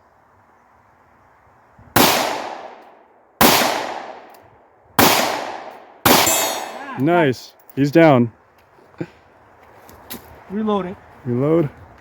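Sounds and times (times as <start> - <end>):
pistol shots echoing: 2.0 - 2.8, 3.4 - 4.3, 5.0 - 7.0.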